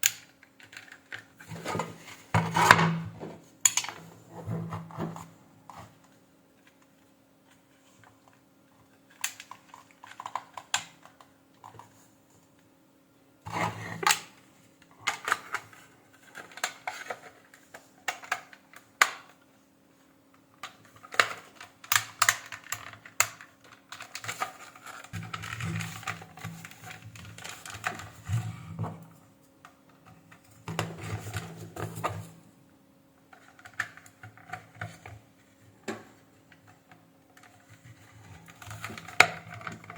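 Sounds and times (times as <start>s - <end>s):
plastic parts clicking and rattling: 0.0s - 2.1s, 7.5s - 12.0s, 15.0s - 19.4s, 20.6s - 28.4s, 33.3s - 35.2s, 35.9s - 39.9s.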